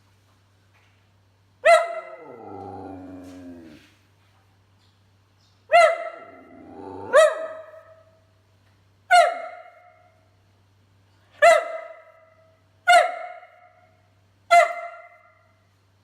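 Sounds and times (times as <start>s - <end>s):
dog barking: 1.6s - 2.4s, 5.7s - 6.5s, 7.1s - 8.2s, 9.1s - 10.1s, 11.4s - 13.9s, 14.5s - 15.5s
dog moaning and whining: 2.1s - 3.9s, 6.2s - 7.4s.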